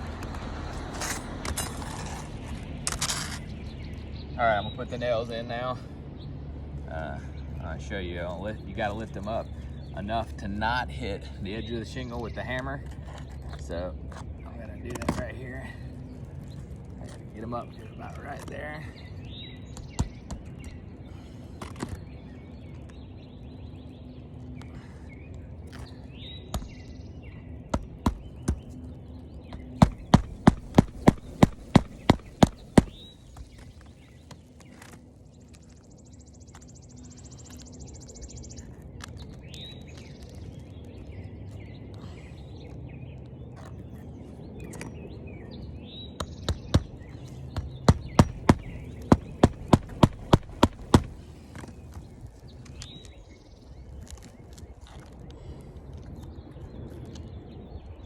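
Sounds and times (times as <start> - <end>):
birds chirping faintly: 0.0 - 58.0
hammer striking roofing nails: 29.8 - 33.0, 47.6 - 51.2.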